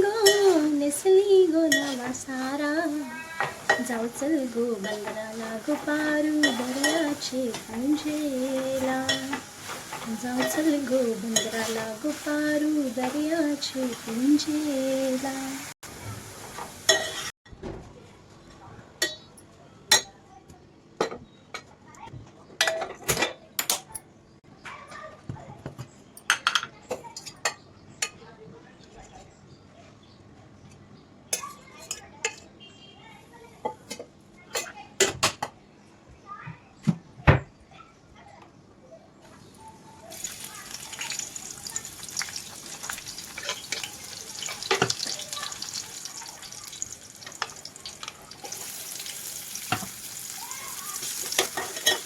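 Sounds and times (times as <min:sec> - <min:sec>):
metal utensils clinking on a pan: 0:00.2 - 0:00.7, 0:01.7 - 0:02.6, 0:03.4 - 0:12.3, 0:16.9 - 0:17.3, 0:40.1 - 0:52.0
food sizzling in hot oil: 0:01.7 - 0:17.4, 0:40.1 - 0:52.0.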